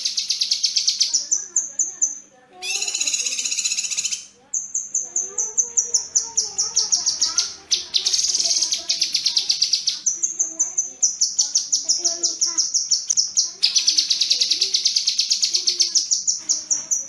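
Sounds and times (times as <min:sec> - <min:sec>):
songbird high chirps: 0:00.0 - 0:17.0
low wavering bird calls: 0:02.6 - 0:10.3.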